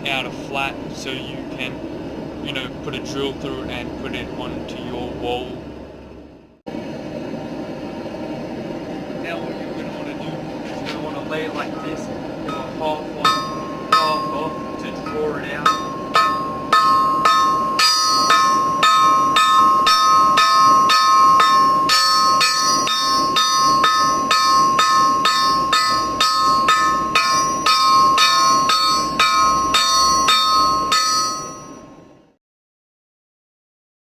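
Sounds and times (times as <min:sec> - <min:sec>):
hammer striking hot metal bar: 0:10.8 - 0:31.8
anvil ringing: 0:11.4 - 0:32.0.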